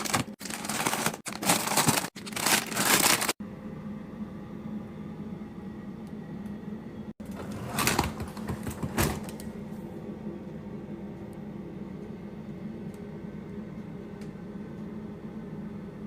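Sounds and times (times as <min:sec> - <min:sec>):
containers clattering: 0:00.0 - 0:03.4
steady low hum: 0:00.0 - 0:16.0.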